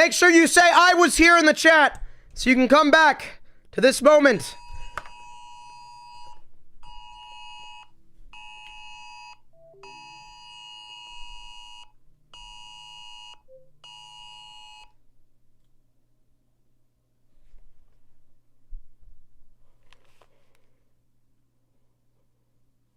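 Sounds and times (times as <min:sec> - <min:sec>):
two-tone alert blare: 0:09.6 - 0:11.0.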